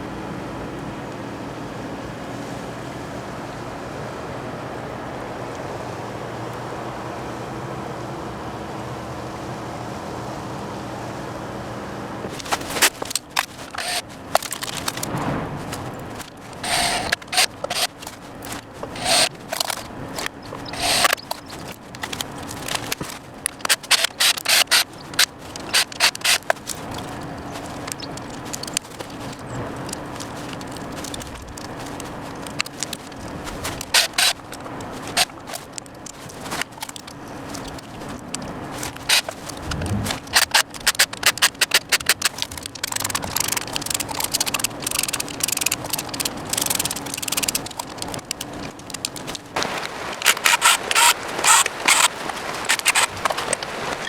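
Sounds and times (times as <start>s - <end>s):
mechanical hum: 0.0s - 54.0s
hands handling small hard parts: 12.3s - 54.0s.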